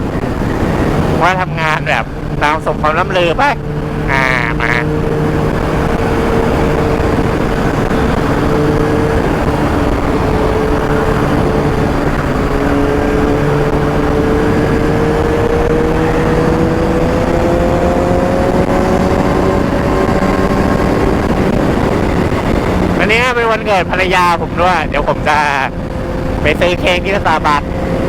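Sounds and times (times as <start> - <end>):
motorcycle engine accelerating: 0.0 - 28.0
wind rushing: 0.0 - 28.0.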